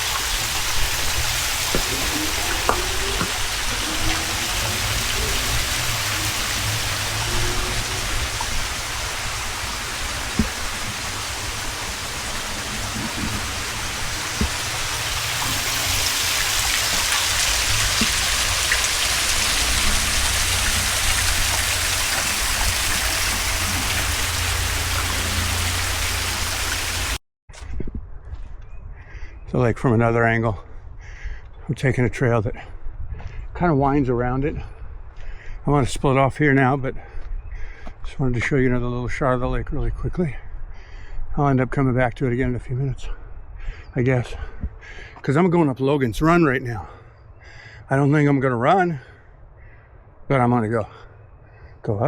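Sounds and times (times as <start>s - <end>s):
waterfall rushing: 0.0s - 27.2s.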